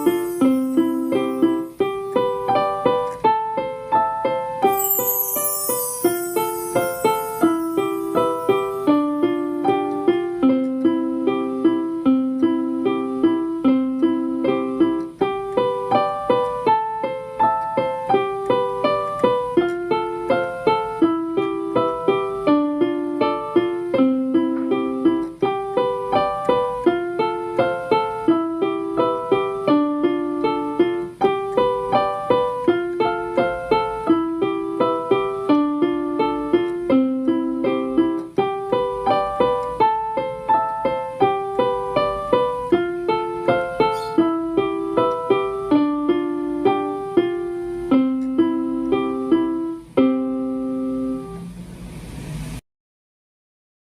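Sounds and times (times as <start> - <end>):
electric piano melody: 0.0 - 52.1.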